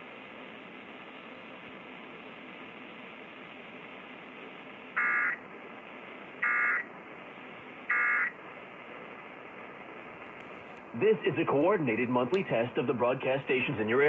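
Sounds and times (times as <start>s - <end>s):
radio hiss: 0.0s - 14.0s
digital data tone bursts: 6.4s - 6.9s, 7.9s - 8.4s.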